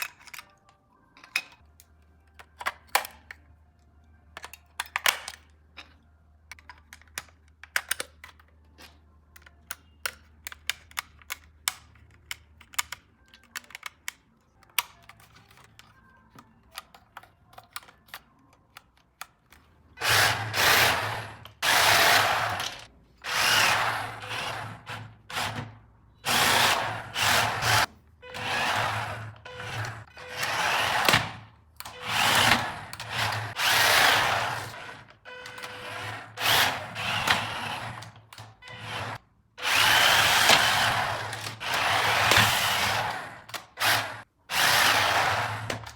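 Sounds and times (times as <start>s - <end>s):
toy car electric motor whirring: 20.0s - 45.9s.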